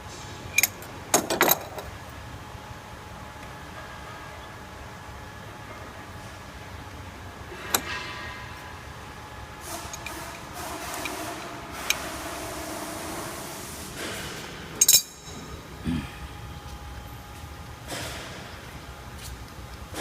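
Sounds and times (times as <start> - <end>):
steady background hum: 0.0 - 20.0
metal parts and tools clinking: 14.8 - 15.5.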